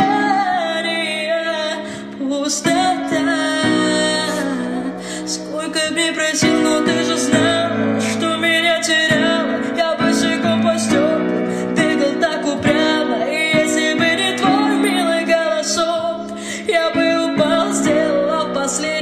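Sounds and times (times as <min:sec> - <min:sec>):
woman singing pop song: 0:00.0 - 0:19.0.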